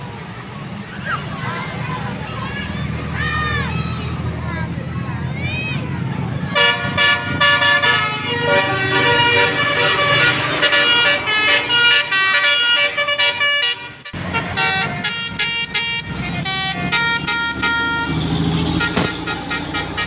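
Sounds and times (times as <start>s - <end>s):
musical horn tooting a tune: 6.6s - 20.0s.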